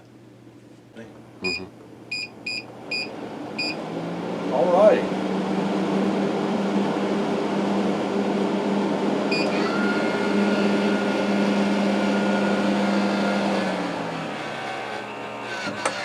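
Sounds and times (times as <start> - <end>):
vent fan motor hum: 0.0 - 16.0
thin high whine: 9.3 - 13.6.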